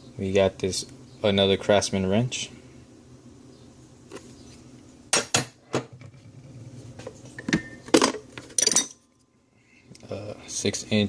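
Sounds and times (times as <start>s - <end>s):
metal wrenches clinking: 8.0s - 9.0s.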